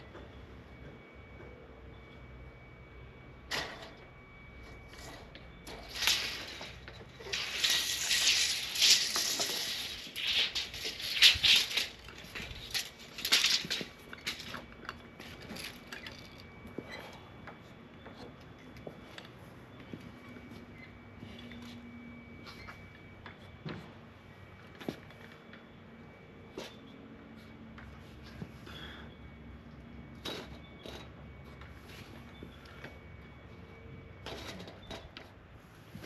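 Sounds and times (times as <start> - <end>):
rough scrapes with clicks: 5.7 - 14.6.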